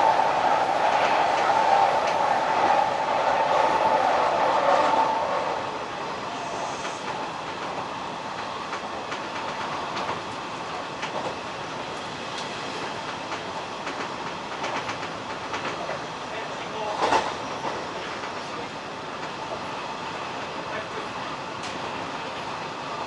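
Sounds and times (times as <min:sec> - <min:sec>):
train rolling noise: 0:00.0 - 0:23.0
wheels clicking over rail joints: 0:12.4 - 0:16.0.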